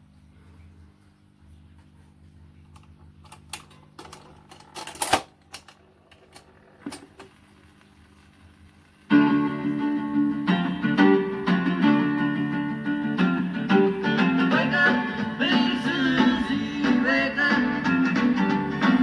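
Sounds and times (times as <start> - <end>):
record player humming: 0.0 - 19.0
clicks and clunks of handling: 2.7 - 7.3.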